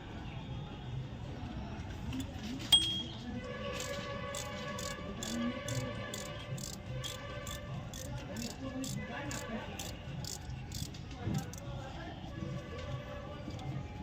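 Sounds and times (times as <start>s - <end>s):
sharp metallic clink: 2.7s - 3.2s
music with ticking beat: 4.4s - 11.6s.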